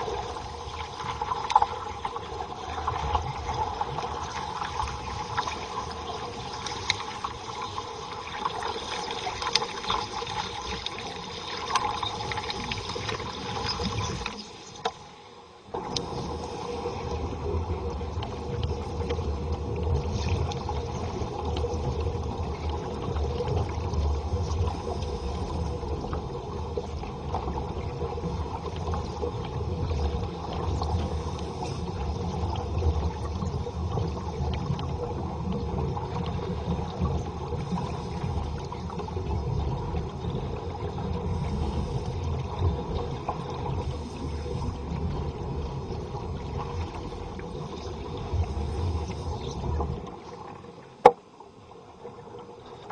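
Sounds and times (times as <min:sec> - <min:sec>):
low underwater rumble: 0:15.7 - 0:52.9.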